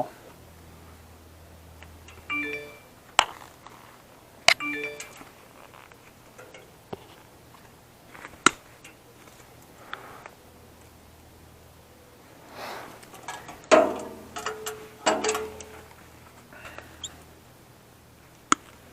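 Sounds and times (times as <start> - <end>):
short electronic tones: 2.3 - 2.9, 4.5 - 5.2
metal parts clicking and clinking: 4.5 - 6.7, 13.1 - 16.4.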